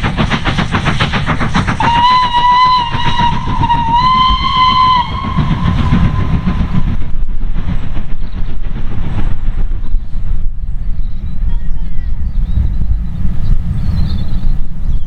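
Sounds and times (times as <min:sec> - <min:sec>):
rhythmic exhaust beats: 0:00.0 - 0:07.2
train rumbling: 0:00.0 - 0:15.0
steam locomotive whistle: 0:01.8 - 0:07.0.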